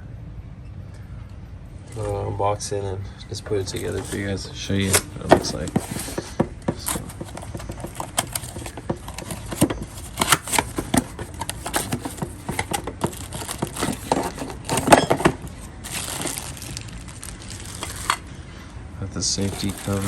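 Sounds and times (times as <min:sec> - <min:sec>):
cardboard packaging being handled: 0:03.6 - 0:18.3, 0:19.3 - 0:20.0.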